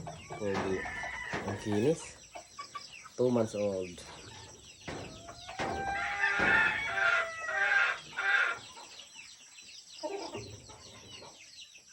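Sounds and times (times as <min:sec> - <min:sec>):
rooster crowing: 0:00.4 - 0:02.0, 0:05.3 - 0:08.6.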